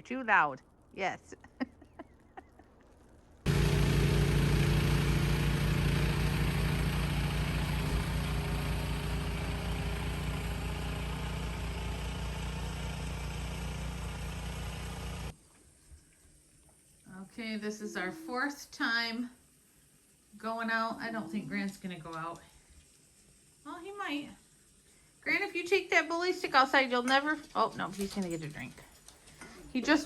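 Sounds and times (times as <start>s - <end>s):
engine running: 3.3s - 15.4s.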